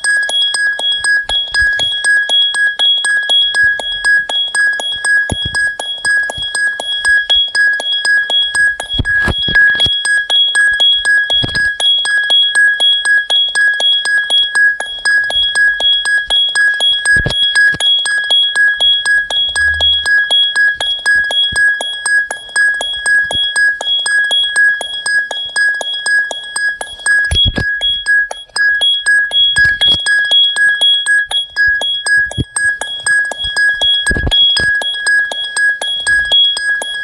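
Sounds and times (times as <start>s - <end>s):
electronic ringtone beeping: 18.8s - 21.6s, 27.2s - 37.0s.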